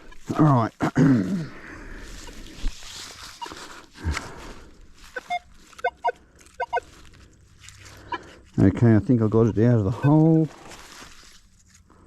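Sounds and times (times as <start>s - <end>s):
metal detector beeps: 5.2s - 6.9s, 9.9s - 10.4s.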